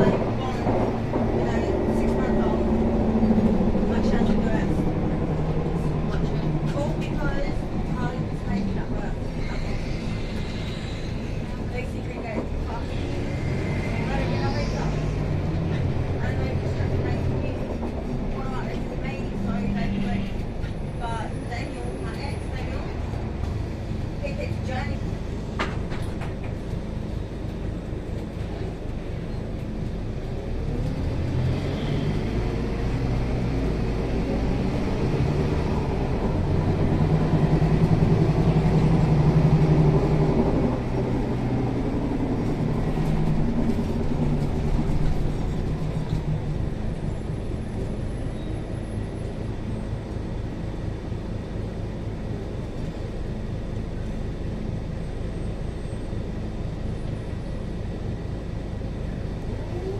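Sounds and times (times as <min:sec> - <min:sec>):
bus diesel engine under load: 0:00.0 - 0:59.9.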